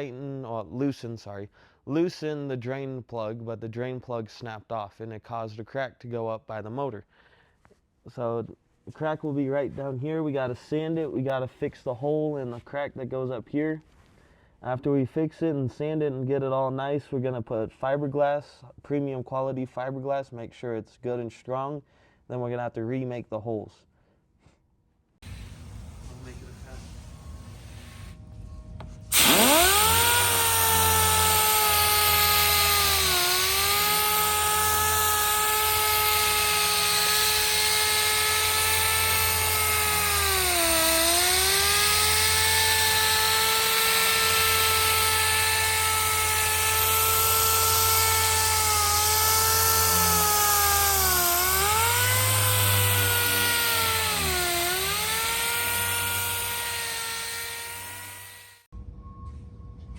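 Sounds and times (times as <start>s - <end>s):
power tool whining: 25.2s - 58.7s.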